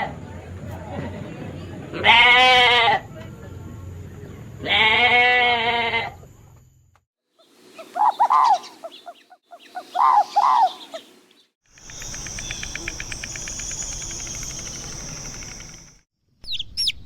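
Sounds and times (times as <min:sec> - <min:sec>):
bird calls: 0:07.4 - 0:16.0
high buzz with rapid ticking: 0:11.7 - 0:16.0.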